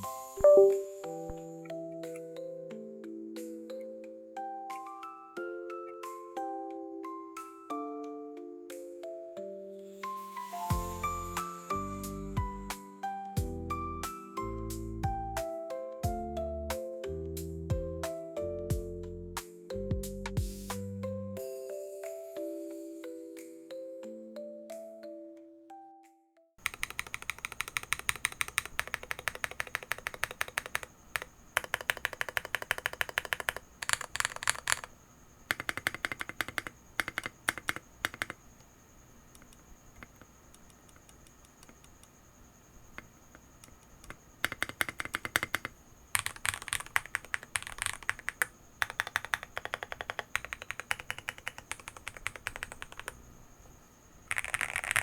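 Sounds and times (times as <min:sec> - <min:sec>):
mechanical keyboard typing: 0:26.6 - 0:38.5, 0:39.3 - 0:42.1, 0:42.9 - 0:53.3, 0:54.2 - 0:55.0.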